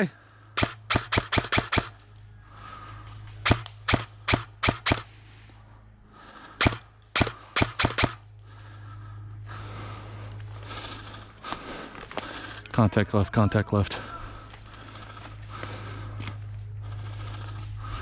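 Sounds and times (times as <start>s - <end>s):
airsoft gun shots: 0.6s - 2.0s, 3.4s - 5.1s, 6.6s - 8.2s.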